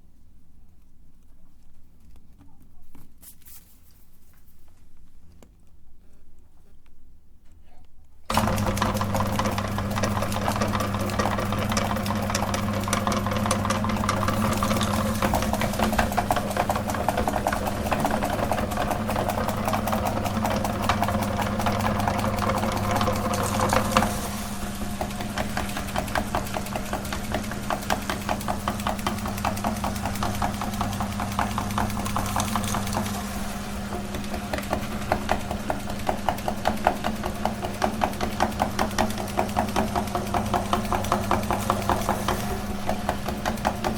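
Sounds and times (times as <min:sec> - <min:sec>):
grinder rattling: 0:08.3 - 0:43.9
meat grinder motor humming: 0:08.3 - 0:43.9.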